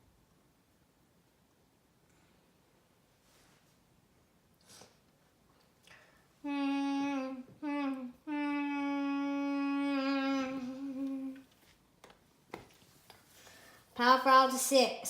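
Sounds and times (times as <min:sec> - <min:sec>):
child humming: 0:06.4 - 0:11.5.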